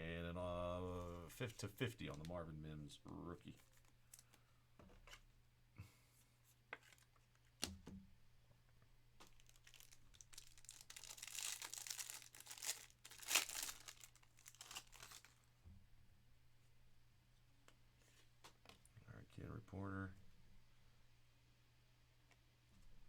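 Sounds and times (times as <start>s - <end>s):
wrapper tearing and crinkling: 9.2s - 15.4s.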